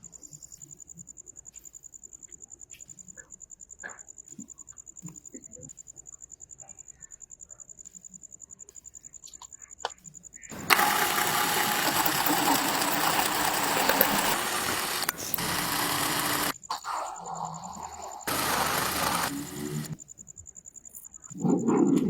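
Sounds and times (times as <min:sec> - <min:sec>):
loud motor running: 0:10.5 - 0:16.6, 0:18.3 - 0:20.0.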